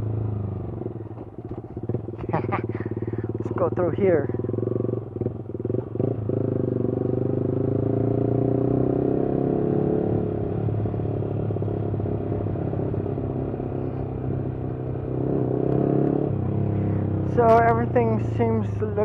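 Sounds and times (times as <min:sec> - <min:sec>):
vehicle exhaust drone: 0:00.0 - 0:06.6, 0:16.3 - 0:19.0.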